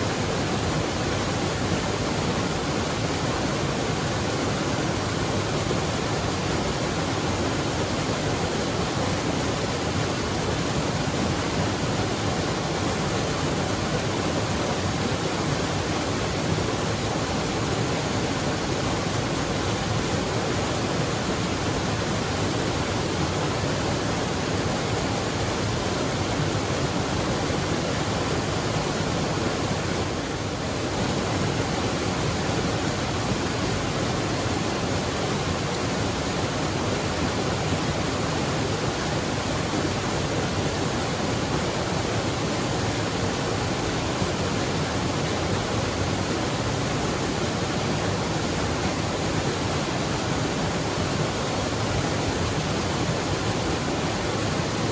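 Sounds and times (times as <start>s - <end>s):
waterfall rushing: 0.0s - 54.9s.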